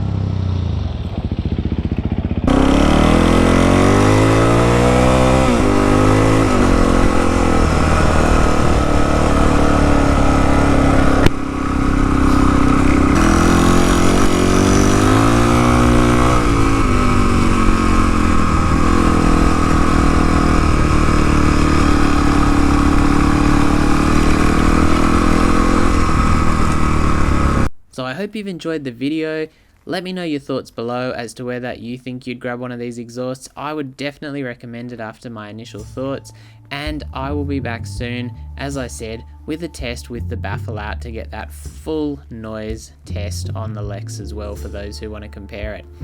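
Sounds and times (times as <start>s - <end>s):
motorcycle engine revving and idling: 0.0s - 27.7s.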